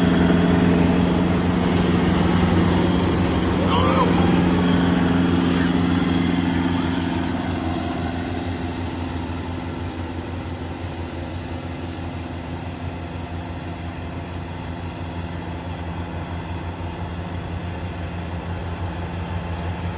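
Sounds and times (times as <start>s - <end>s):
farm machine engine humming: 0.0s - 10.4s.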